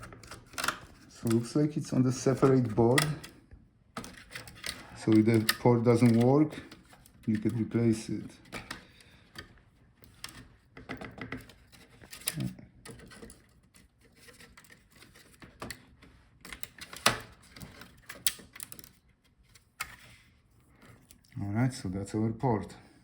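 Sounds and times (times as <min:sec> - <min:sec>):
screwdriver being handled: 0:00.0 - 0:03.4, 0:04.0 - 0:20.1
small parts clicking and tapping: 0:04.0 - 0:07.6, 0:16.4 - 0:19.0.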